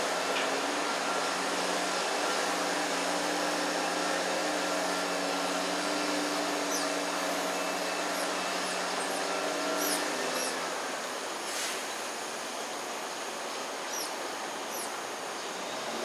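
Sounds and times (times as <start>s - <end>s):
machine motor whooshing and humming: 0.8s - 11.7s.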